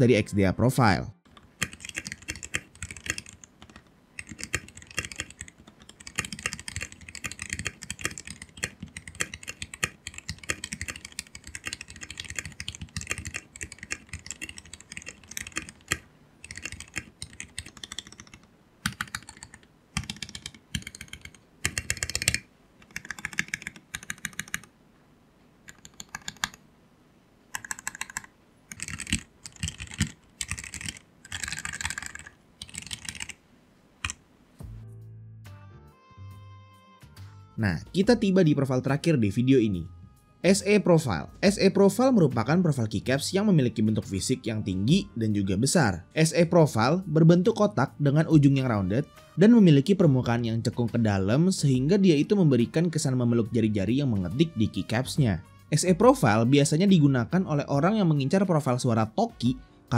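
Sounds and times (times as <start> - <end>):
mechanical keyboard typing: 1.3 - 24.7, 25.7 - 26.6, 27.5 - 33.4, 34.0 - 34.2.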